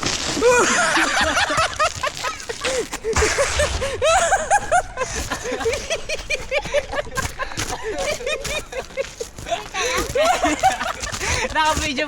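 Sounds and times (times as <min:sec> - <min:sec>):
high-pitched laughter: 0:00.4 - 0:11.1.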